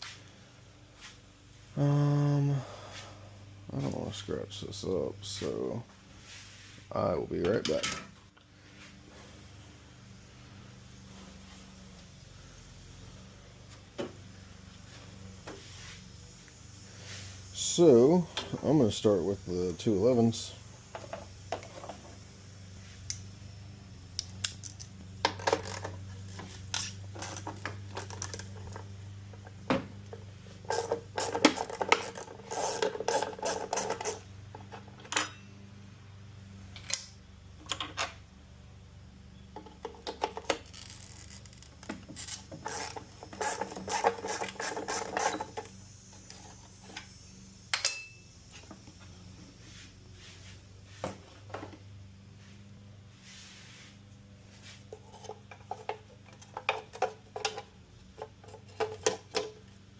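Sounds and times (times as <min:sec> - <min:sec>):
ratchet wrench clicking: 0:30.7 - 0:34.2, 0:42.2 - 0:45.7.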